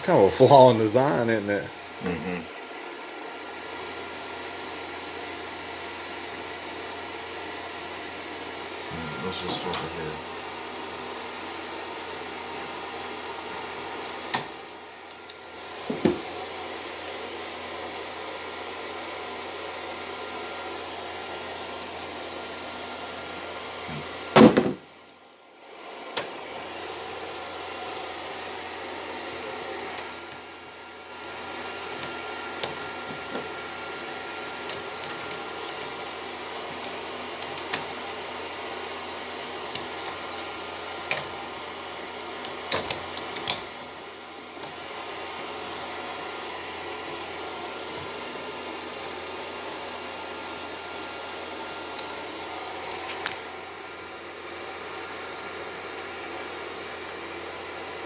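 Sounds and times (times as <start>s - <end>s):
steady hiss: 8.8s - 10.8s
loud pop: 24.4s - 24.8s.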